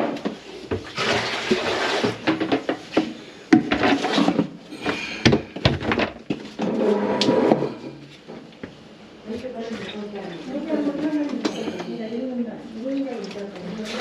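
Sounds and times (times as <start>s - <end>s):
water splashing in a sink: 0.7s - 2.7s.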